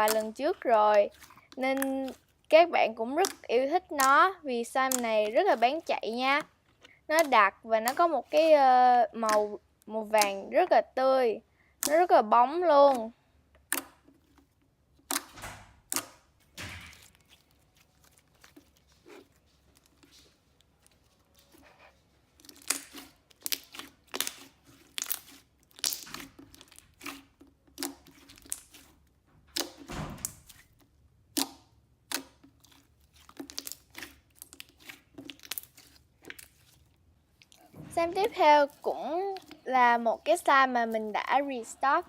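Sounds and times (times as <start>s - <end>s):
slime sticky pops and crackles: 3.2s - 4.2s, 13.6s - 14.1s, 15.0s - 17.5s, 22.4s - 28.9s, 29.5s - 36.7s, 39.3s - 39.7s.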